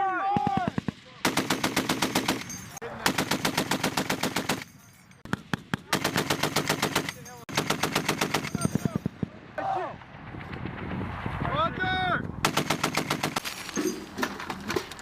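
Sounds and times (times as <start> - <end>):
machine gun firing bursts: 0.6 - 4.7, 5.3 - 9.2, 12.4 - 13.5.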